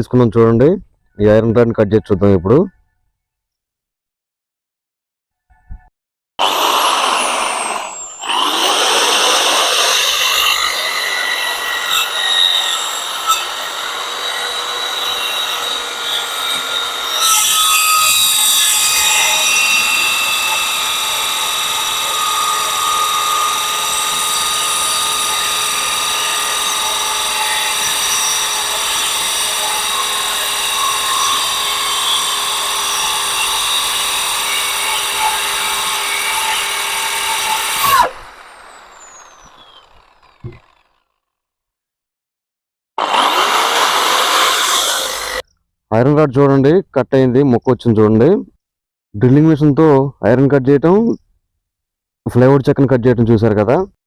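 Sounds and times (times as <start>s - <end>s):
electric drill cutting metal rod: 6.4s - 41.1s, 43.0s - 45.4s.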